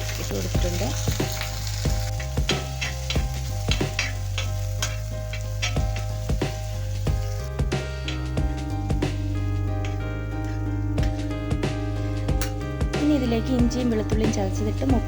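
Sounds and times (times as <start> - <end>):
onions sizzling in hot oil: 0.0 - 15.0
utensil scraping and knocking pan: 2.2 - 6.6.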